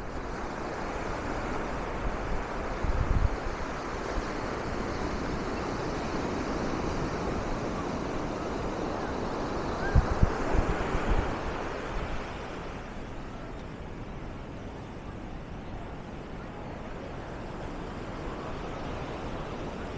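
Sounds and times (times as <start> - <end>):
wind buffeting microphone: 1.8 - 4.5, 9.7 - 12.5.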